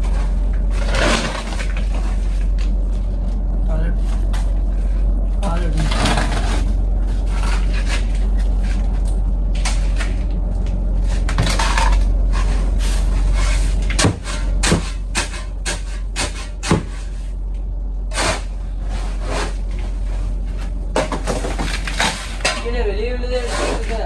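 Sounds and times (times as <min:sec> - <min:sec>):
steady low hum: 0:00.0 - 0:24.0
sharp knocks and clatters: 0:13.3 - 0:17.3.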